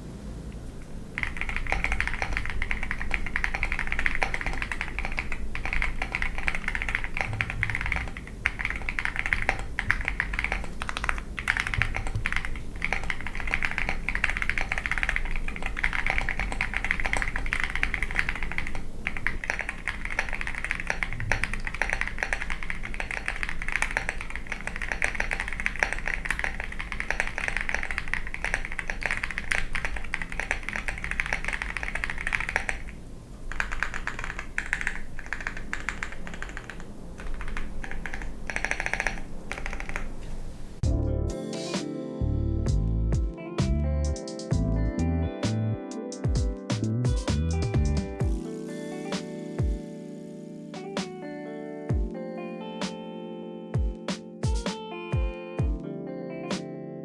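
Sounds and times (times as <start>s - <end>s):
fast keyboard typing: 1.0s - 40.8s.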